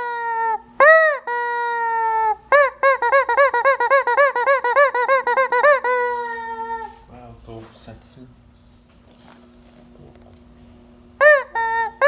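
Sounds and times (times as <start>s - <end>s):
rubber chicken toy squealing: 0.0s - 7.0s, 11.2s - 12.0s.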